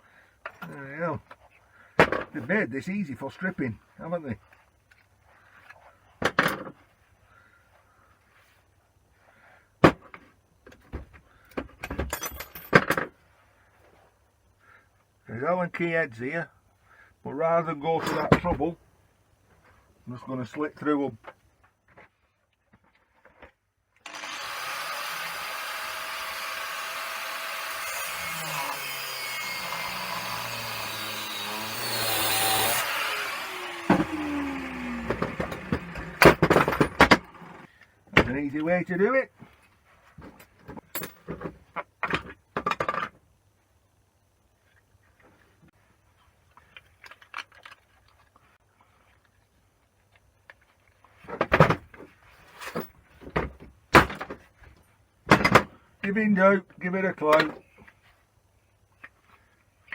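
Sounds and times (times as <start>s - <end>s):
grinder spinning down whine: 24.1s - 37.6s
angle grinder cutting metal: 24.1s - 37.7s.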